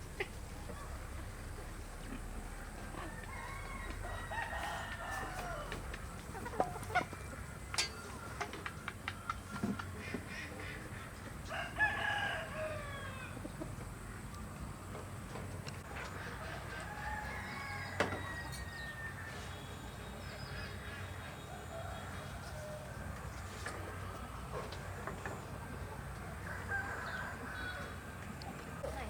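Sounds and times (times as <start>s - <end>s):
rooster crowing: 2.4s - 9.6s, 11.5s - 13.4s, 16.4s - 19.9s, 21.4s - 23.2s, 25.8s - 28.4s.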